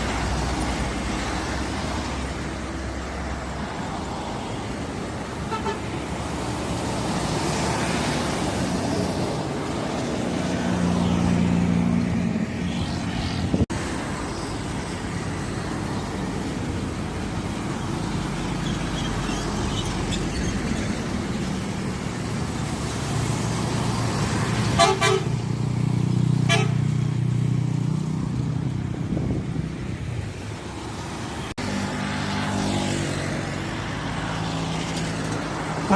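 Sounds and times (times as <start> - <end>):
bus engines passing: 0.0 - 35.9
bus horn pulsed blasts: 5.5 - 5.8, 24.8 - 25.4, 26.5 - 26.9.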